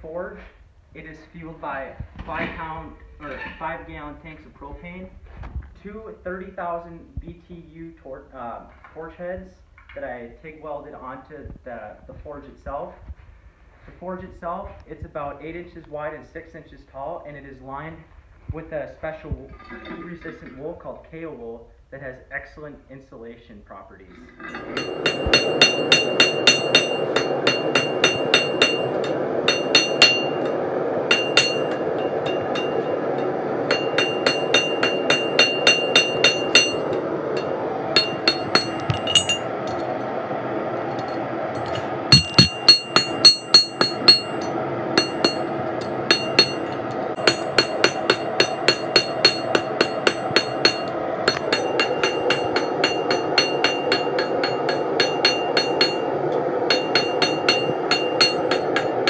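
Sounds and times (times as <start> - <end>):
forge burners roaring: 19.2 - 21.1, 24.0 - 59.0
hammer striking steel on anvil: 24.3 - 39.9, 41.0 - 59.0.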